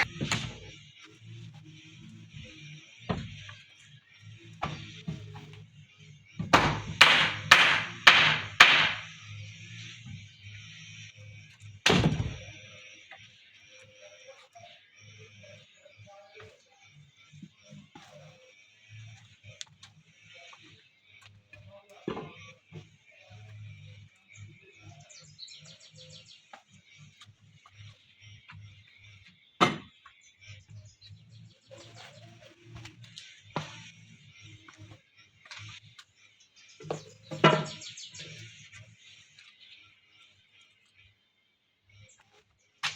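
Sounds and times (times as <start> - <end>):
hammer striking wood: 0.0 - 0.7, 3.1 - 3.6, 4.6 - 5.6, 6.4 - 9.1, 11.8 - 12.5, 29.6 - 30.0, 36.8 - 37.8
small birds chirping: 0.0 - 42.9
sharp knock: 6.6 - 9.0.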